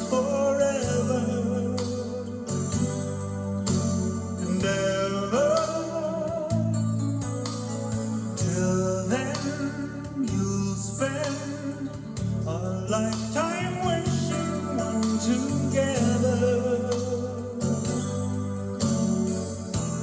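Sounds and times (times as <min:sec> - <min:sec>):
song over loudspeakers: 0:00.0 - 0:20.0.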